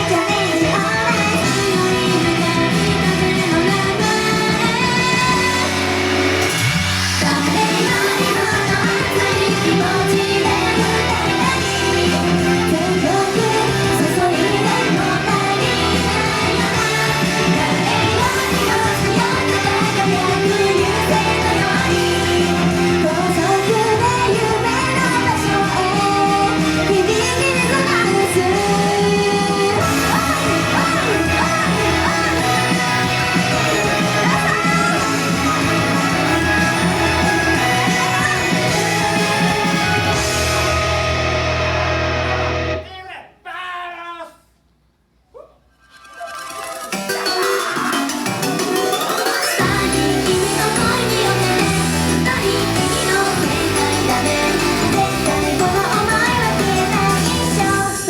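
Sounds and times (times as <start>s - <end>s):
pop song with guitar: 0.0s - 42.8s, 49.5s - 58.0s
instrumental backing with guitar: 30.1s - 42.8s.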